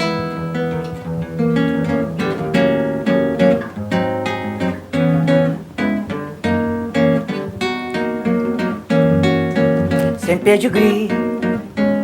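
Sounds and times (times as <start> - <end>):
acoustic guitar strumming chords: 0.0 - 12.0.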